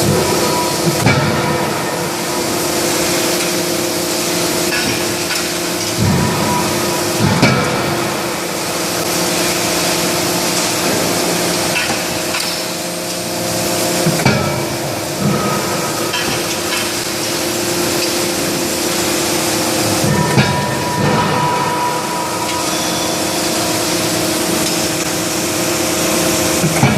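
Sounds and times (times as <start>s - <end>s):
machinery humming: 0.0s - 26.9s
forging hammer blows: 17.8s - 26.9s.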